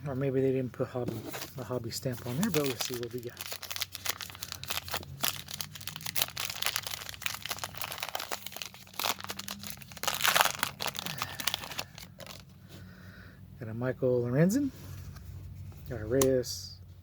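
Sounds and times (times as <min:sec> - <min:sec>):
wrapper crinkling and tearing: 0:02.2 - 0:12.4.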